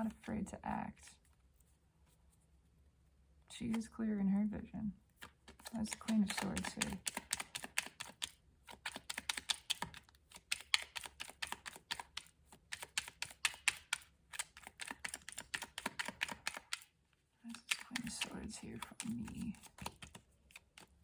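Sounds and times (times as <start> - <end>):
typing on keyboard: 5.5 - 16.9, 17.5 - 20.9.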